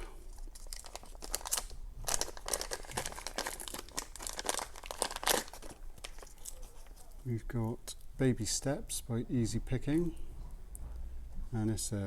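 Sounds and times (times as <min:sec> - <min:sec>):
packaging crinkling: 0:00.2 - 0:07.3.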